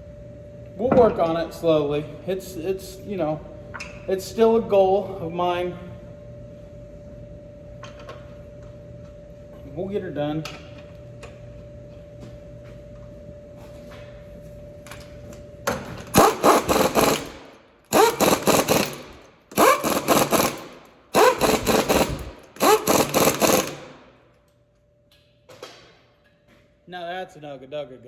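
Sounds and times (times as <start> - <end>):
impact wrench hammering: 16.1 - 24.1.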